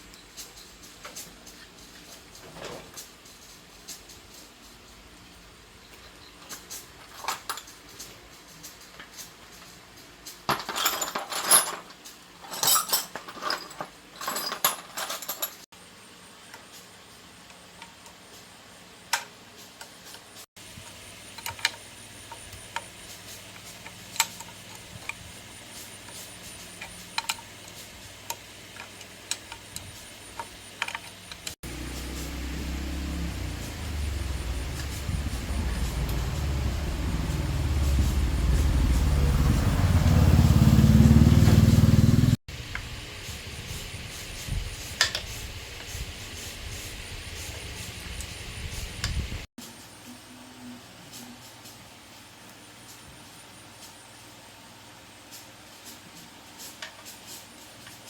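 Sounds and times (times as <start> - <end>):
low steady hum: 31.6 - 40.4
small motorbike engine revving: 31.6 - 42.4.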